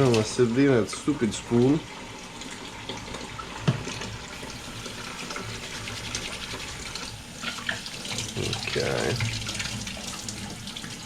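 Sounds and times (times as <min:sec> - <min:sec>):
tap running into sink: 0:02.9 - 0:11.0.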